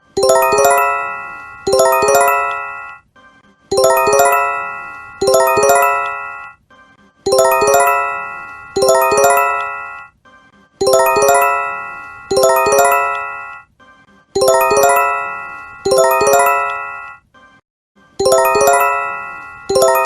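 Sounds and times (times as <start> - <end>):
bell-like warning chime: 0.2 - 3.0, 3.8 - 6.6, 7.3 - 10.1, 10.8 - 13.6, 14.4 - 17.2, 18.2 - 20.0.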